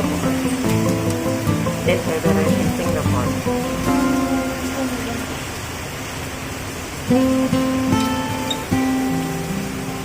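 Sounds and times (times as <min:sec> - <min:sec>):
music chord ringing out: 0:00.0 - 0:05.4
heavy rain hissing: 0:00.0 - 0:10.0.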